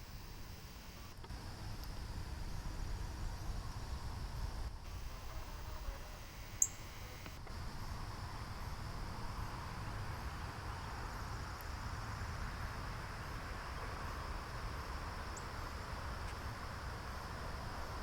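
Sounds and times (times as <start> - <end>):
insect chorus: 0.0 - 18.0
faint high chirp: 5.0 - 7.3.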